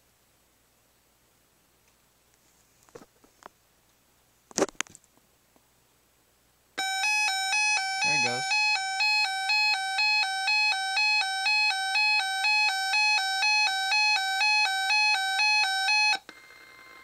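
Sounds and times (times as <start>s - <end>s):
two-pitch electronic alarm: 6.8s - 17.0s.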